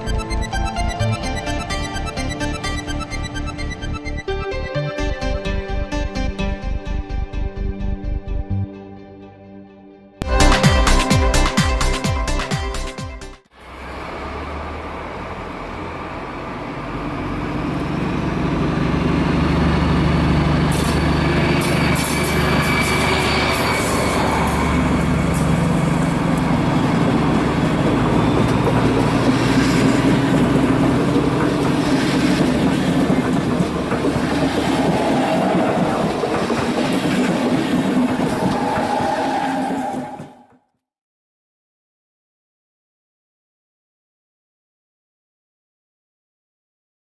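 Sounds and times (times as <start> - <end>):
wheels clicking over rail joints: 19.2 - 40.4.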